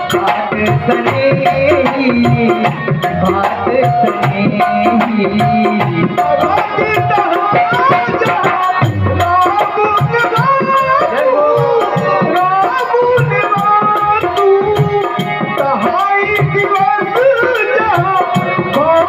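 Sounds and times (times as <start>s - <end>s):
tabla and drum rhythm: 0.0s - 19.0s
melody with sliding notes: 8.8s - 14.9s.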